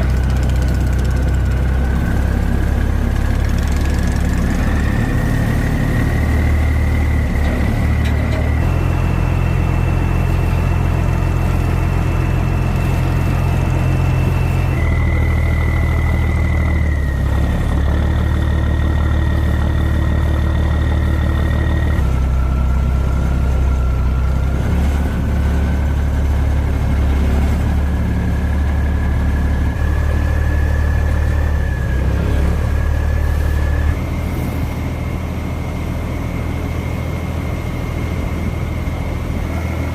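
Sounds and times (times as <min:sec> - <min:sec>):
boat engine drone: 0:00.0 - 0:39.9.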